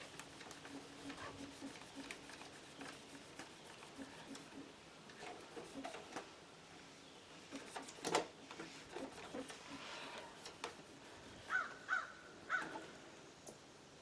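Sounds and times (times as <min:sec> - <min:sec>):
rubbing and clicking on plastic case: 0:00.0 - 0:06.3, 0:07.4 - 0:11.5
bird harsh calls: 0:11.3 - 0:12.9.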